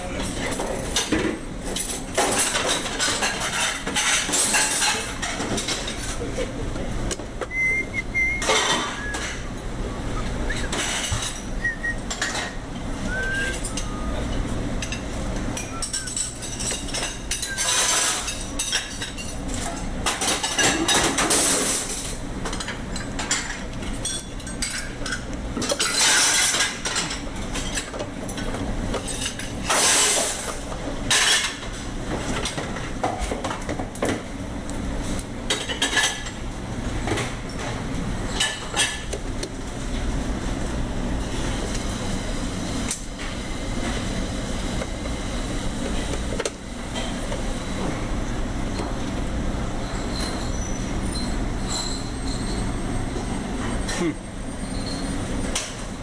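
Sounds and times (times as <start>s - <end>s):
steady low hum: 0.0s - 20.4s
tools and metal parts clinking: 15.6s - 19.3s.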